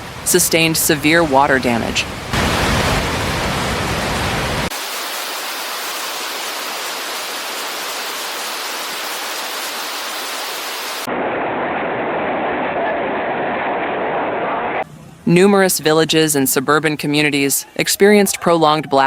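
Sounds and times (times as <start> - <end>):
water rushing: 0.0 - 11.1.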